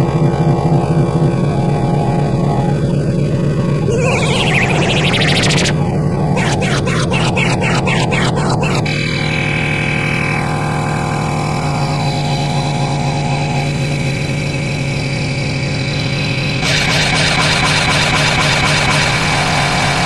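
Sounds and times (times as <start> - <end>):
falling tone: 3.8 - 9.1.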